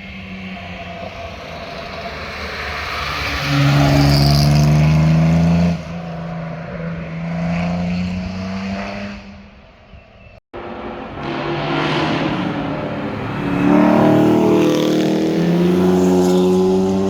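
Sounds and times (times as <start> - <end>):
car engine accelerating past: 10.6 - 17.0.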